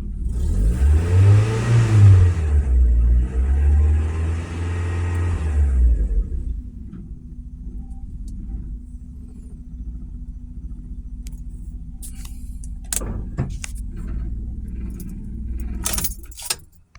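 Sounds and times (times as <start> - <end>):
car engine rough idle: 0.0 - 0.7, 4.8 - 16.5
sharp clicks and rattles: 7.8 - 16.9.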